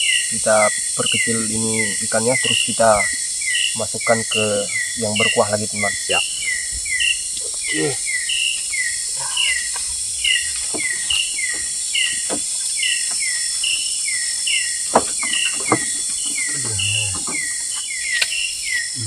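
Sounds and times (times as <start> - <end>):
high insect drone: 0.0 - 19.0
sharp knocks: 14.9 - 17.6.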